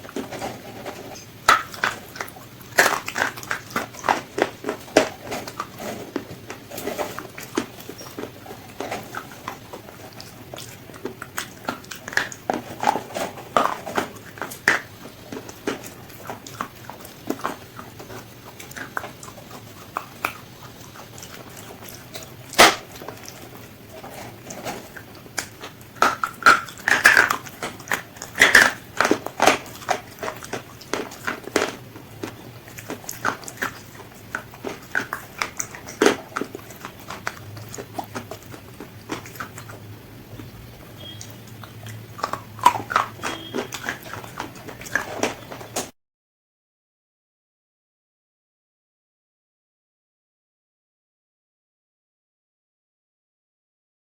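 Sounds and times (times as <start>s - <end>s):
crunchy fried chicken being chewed: 0.0s - 45.9s.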